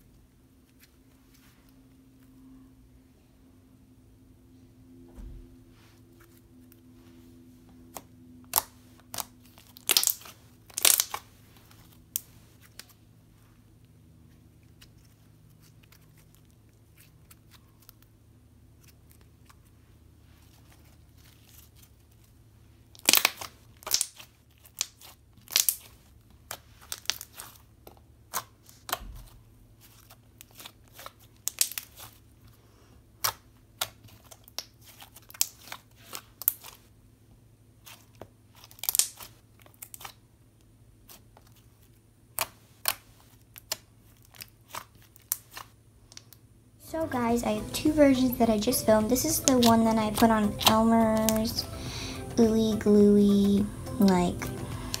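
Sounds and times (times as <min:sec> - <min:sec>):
slime squishing clicks and pops: 0:49.4 - 0:51.6.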